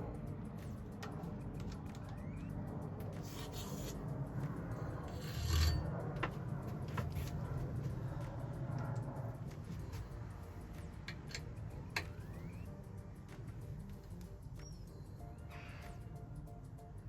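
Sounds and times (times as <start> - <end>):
steady low hum: 0.0 - 17.0
scraping of bicycle parts: 3.2 - 4.1, 4.9 - 7.4.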